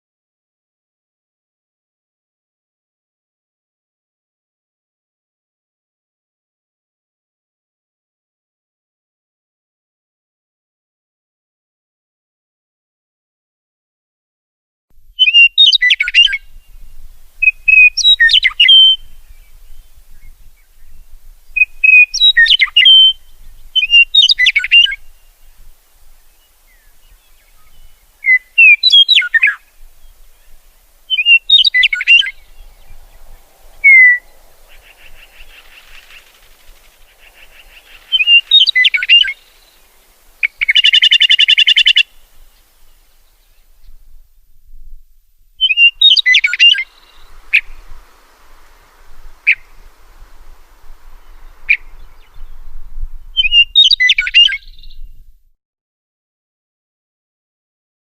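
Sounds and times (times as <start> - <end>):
songbird chirping: 15.1 - 55.4
buzzy bird trill: 21.6 - 25.4, 26.7 - 42.9, 45.6 - 55.0.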